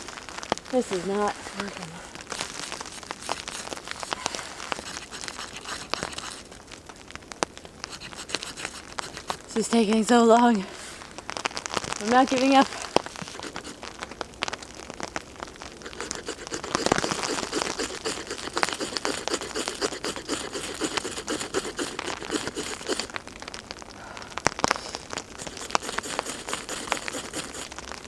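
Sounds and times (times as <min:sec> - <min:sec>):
rain dripping on a tarp: 0:00.0 - 0:04.8, 0:06.6 - 0:07.9, 0:10.4 - 0:15.8, 0:23.1 - 0:25.5
tinder crinkling: 0:00.0 - 0:23.8, 0:24.6 - 0:28.0.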